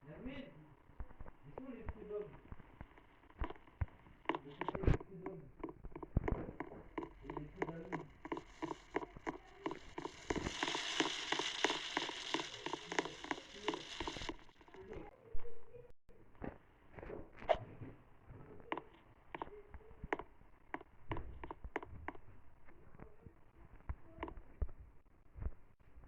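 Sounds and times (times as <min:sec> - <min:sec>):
rapid crackling clicks and clatter: 0:00.7 - 0:15.1
faint voices: 0:04.3 - 0:15.9
steady hiss: 0:07.2 - 0:15.1.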